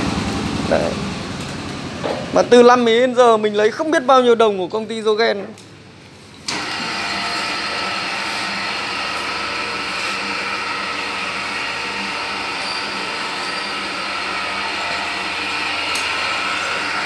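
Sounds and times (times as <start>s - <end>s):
high steady whining tones: 5.9s - 17.0s
machine running with hum: 6.5s - 17.0s.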